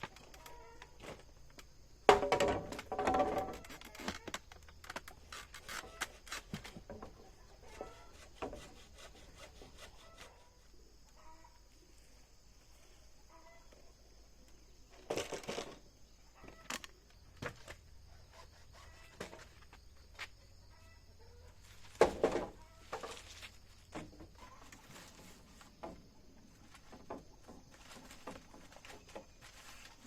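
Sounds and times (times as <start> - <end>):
chickens clucking and squawking: 18.1 - 19.5, 24.2 - 25.7.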